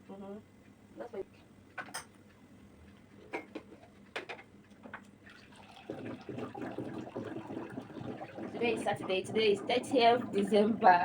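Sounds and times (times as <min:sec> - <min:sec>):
water running: 0:05.2 - 0:11.0.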